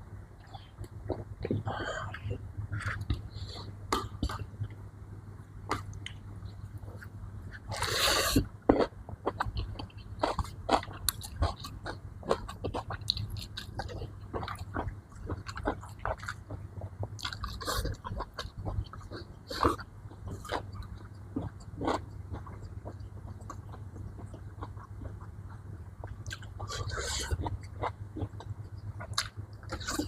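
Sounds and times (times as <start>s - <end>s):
steady low hum: 0.0s - 30.0s
wet chewing and mouth clicks: 6.8s - 30.0s.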